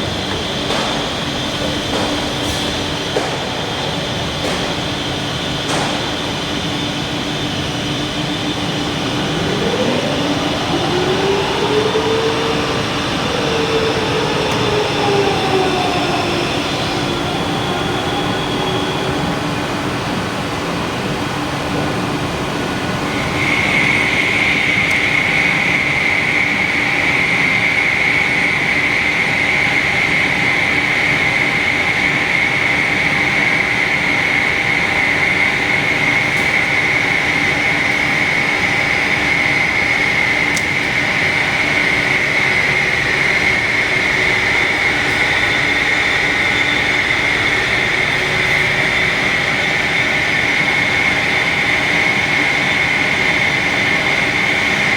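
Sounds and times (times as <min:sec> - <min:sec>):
high-pitched machine whine: 0:00.0 - 0:54.9
lathe machine hum: 0:00.0 - 0:54.9.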